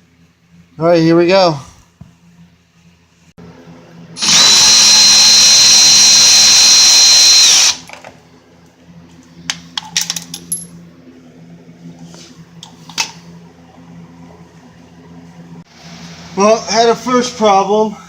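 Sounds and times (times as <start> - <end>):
power drill whine: 4.2 - 7.9.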